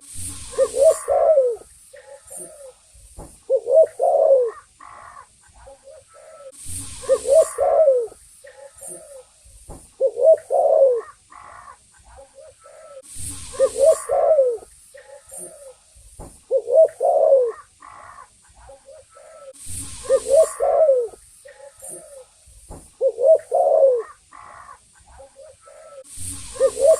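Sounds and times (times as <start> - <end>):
dove cooing: 0.4 - 2.8, 3.4 - 9.4, 10.0 - 22.4, 23.0 - 26.9.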